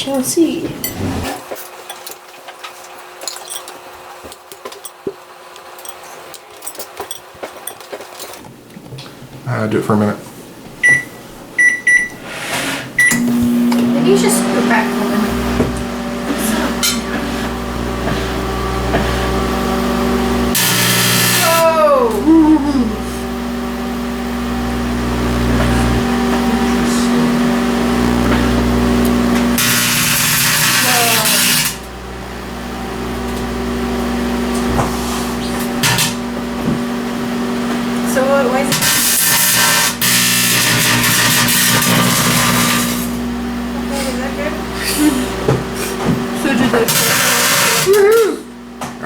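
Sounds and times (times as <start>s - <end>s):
microwave oven hum: 10.6s - 49.0s
sparks crackling and popping: 20.5s - 21.6s, 24.2s - 32.0s.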